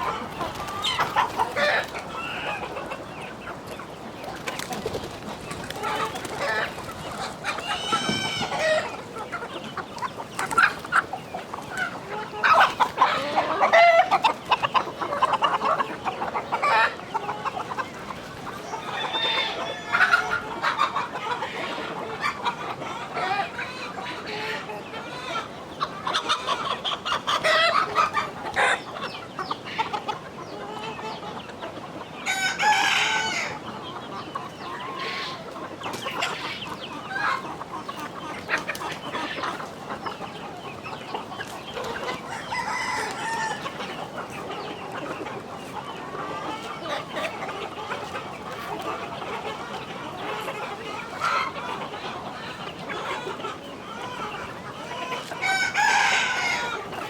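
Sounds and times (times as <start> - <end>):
chickens clucking: 0.0 - 57.0
rooster crowing: 42.3 - 43.7, 55.4 - 56.9.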